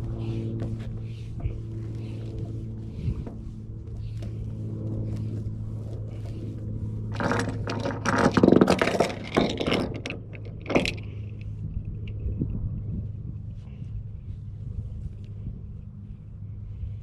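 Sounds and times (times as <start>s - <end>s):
scraping and rattling: 0.0s - 11.2s
low mechanical hum: 0.0s - 17.0s.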